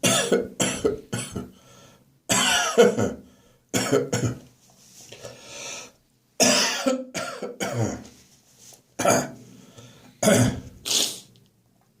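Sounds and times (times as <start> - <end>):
person clearing throat: 0.0 - 1.6, 2.3 - 3.2, 3.8 - 4.4, 6.4 - 8.1, 9.0 - 9.4, 10.2 - 11.2
person coughing: 0.0 - 1.6, 2.3 - 4.4, 6.4 - 8.1, 9.0 - 9.4, 10.2 - 11.2.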